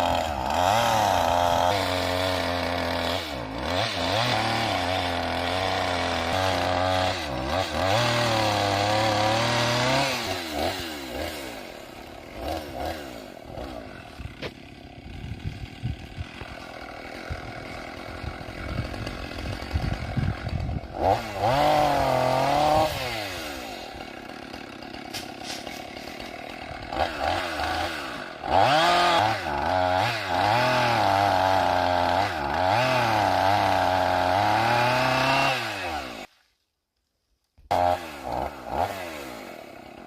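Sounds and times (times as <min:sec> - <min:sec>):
chainsaw idling: 0:00.0 - 0:36.3, 0:37.7 - 0:40.0
chainsaw cutting logs: 0:00.0 - 0:36.5, 0:37.5 - 0:40.0.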